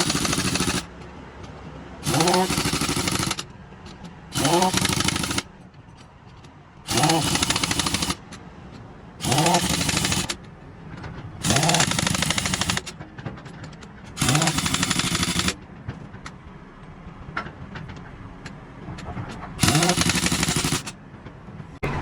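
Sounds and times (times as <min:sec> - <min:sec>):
pneumatic impact wrench hammering: 0:00.0 - 0:00.9, 0:02.0 - 0:05.5, 0:06.9 - 0:08.4, 0:09.2 - 0:10.4, 0:11.4 - 0:13.0, 0:14.1 - 0:15.6, 0:19.6 - 0:21.0.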